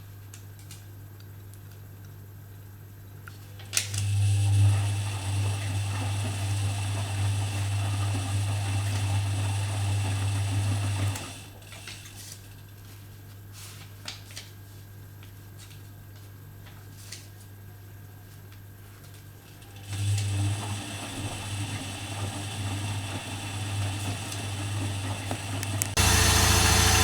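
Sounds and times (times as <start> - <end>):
washing machine motor whirring: 3.9 - 12.0, 19.4 - 27.0.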